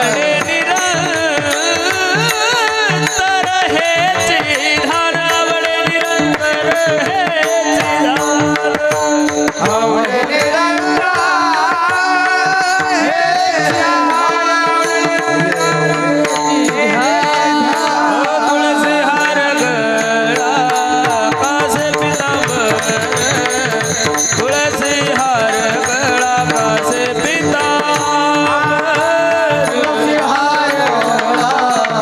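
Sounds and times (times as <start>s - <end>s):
person singing ornamented melody: 0.0s - 32.0s
tabla strokes: 0.0s - 32.0s.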